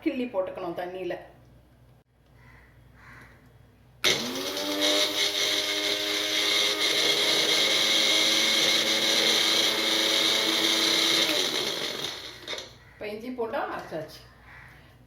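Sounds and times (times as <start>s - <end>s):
mixer grinder motor whining: 4.0s - 12.8s.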